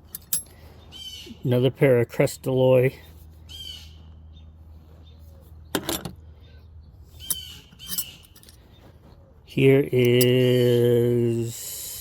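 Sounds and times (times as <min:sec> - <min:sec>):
bird chirping calls: 0:00.6 - 0:01.5, 0:03.4 - 0:09.5
bird squawking: 0:03.5 - 0:04.0, 0:07.2 - 0:08.3.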